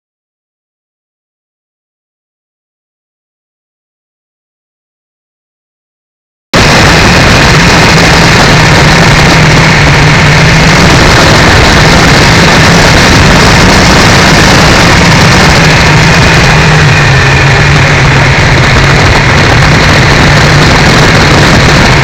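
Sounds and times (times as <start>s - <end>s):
motorcycle engine running: 6.6s - 22.0s
thick noise wash: 6.6s - 22.0s.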